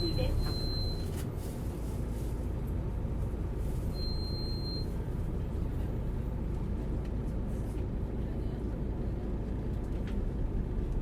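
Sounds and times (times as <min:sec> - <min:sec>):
bus engine and road rumble: 0:00.0 - 0:11.0
short high beep: 0:03.9 - 0:04.9.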